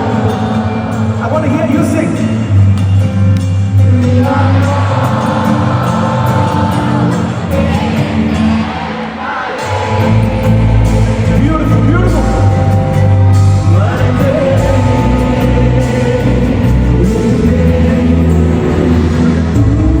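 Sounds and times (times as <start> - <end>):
live band music: 0.0 - 20.0
person singing: 3.8 - 20.0
deep bass: 9.8 - 20.0.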